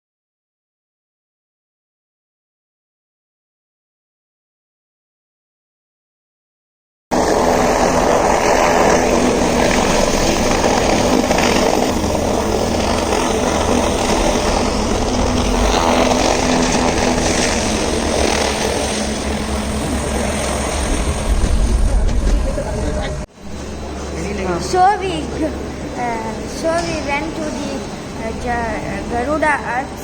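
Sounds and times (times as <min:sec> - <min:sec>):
helicopter engine and rotor drone: 0:07.1 - 0:30.0.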